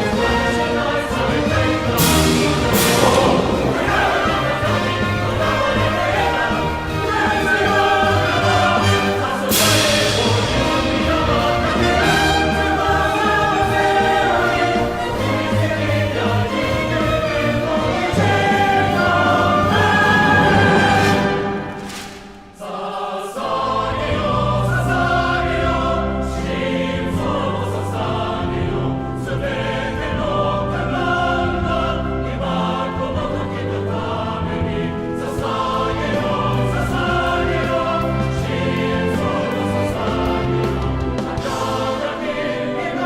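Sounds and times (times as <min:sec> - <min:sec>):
choral singing: 0:00.0 - 0:43.0.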